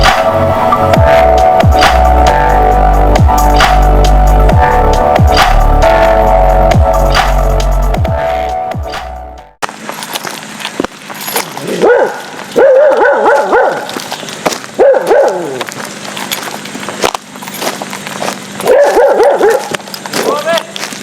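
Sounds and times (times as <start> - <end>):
dog barking and yipping: 11.6 - 14.1, 14.7 - 15.6, 18.6 - 19.9.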